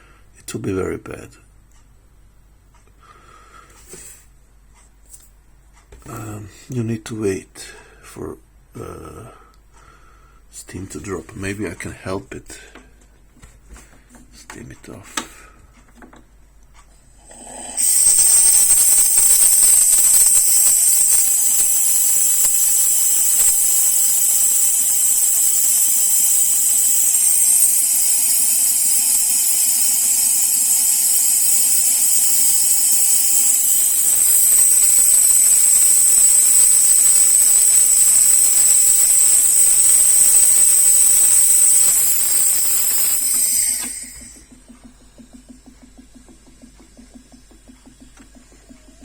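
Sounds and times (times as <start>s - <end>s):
steam wand hissing: 17.2s - 44.5s.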